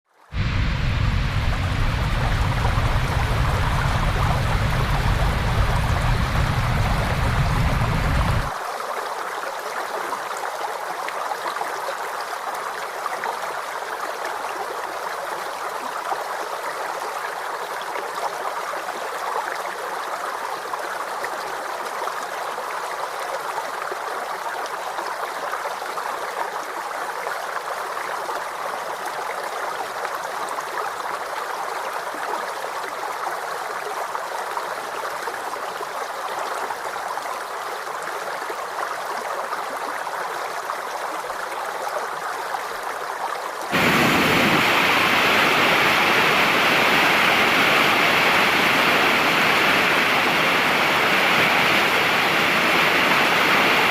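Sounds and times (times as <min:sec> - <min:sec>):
waterfall rushing: 0:00.3 - 0:08.6, 0:43.7 - 0:53.9.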